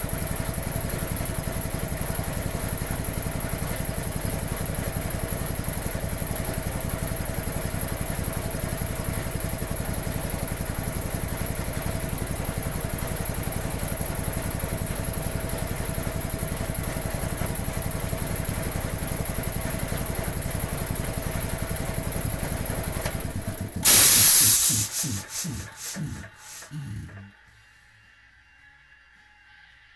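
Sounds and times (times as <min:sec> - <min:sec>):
air compressor running: 0:00.0 - 0:27.3
air hiss burst: 0:23.8 - 0:27.2.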